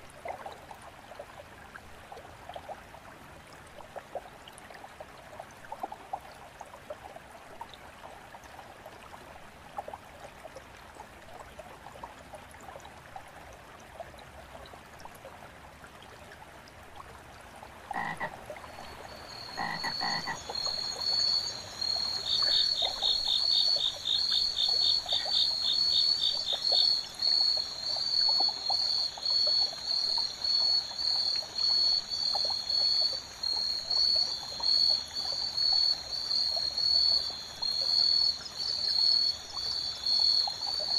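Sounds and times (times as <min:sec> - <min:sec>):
stream trickling: 0:00.0 - 0:40.9
frog croaking: 0:17.9 - 0:34.8
insects trilling: 0:17.9 - 0:40.9.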